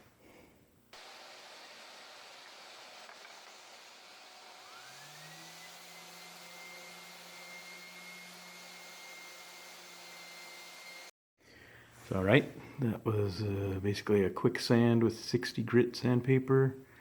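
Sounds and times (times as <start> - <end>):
sander motor whine: 1.0 - 11.1.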